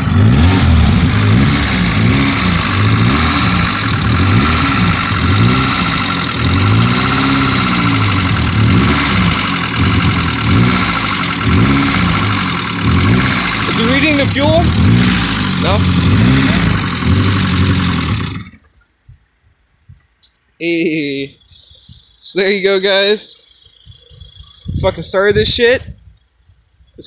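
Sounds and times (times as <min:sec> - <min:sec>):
car engine revving rough: 0:00.0 - 0:18.7.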